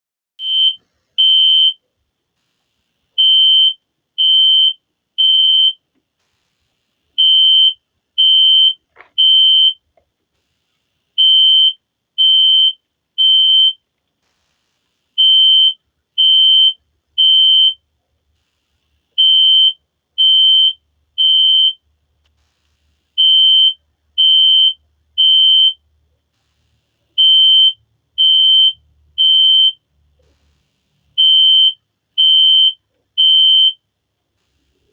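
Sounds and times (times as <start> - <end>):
high-pitched alarm horn beeps: 3.2 - 5.8, 7.2 - 9.8, 15.2 - 17.8, 19.2 - 21.8, 23.2 - 25.8, 27.2 - 29.8, 31.2 - 33.8.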